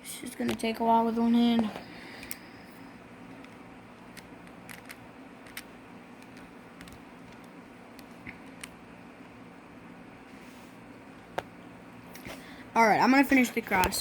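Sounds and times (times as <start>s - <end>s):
faint steady hum: 0.0s - 14.0s
plastic cube pieces clicking: 4.1s - 7.5s.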